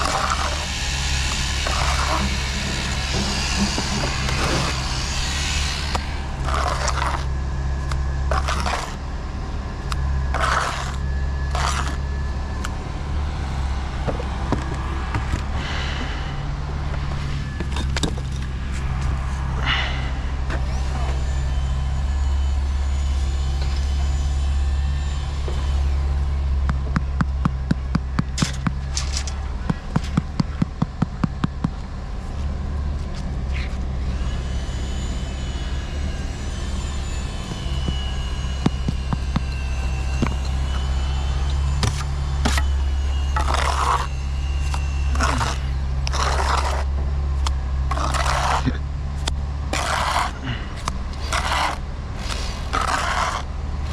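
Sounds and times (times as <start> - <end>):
scrapes: 0.0 - 7.4, 36.6 - 48.9, 49.7 - 53.9
low machine drone: 0.0 - 53.9.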